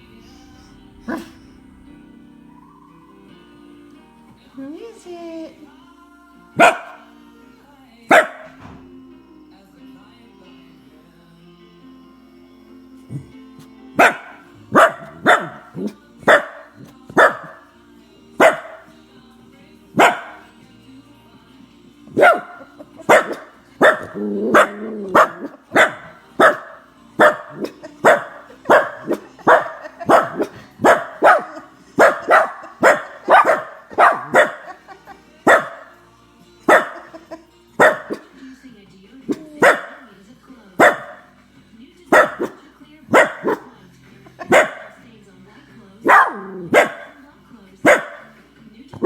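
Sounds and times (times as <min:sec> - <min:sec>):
dog barking sharply: 0:46.1 - 0:47.1, 0:47.9 - 0:48.3.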